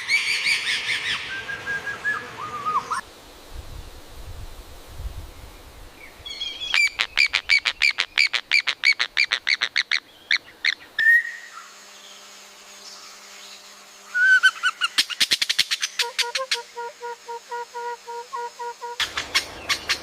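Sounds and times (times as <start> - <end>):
bird chirping: 14.2 - 20.0.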